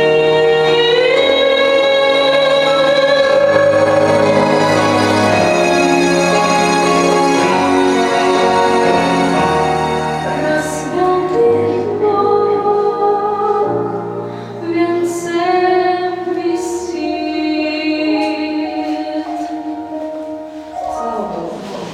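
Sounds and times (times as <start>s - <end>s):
woman singing: 0.0s - 5.6s, 10.2s - 20.1s
instrumental accompaniment: 0.0s - 21.9s.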